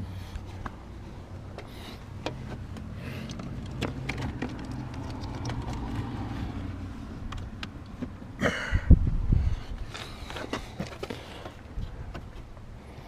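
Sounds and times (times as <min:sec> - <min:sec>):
steady low rumble: 0:00.0 - 0:13.0
cable clicks and knocks: 0:01.6 - 0:06.3.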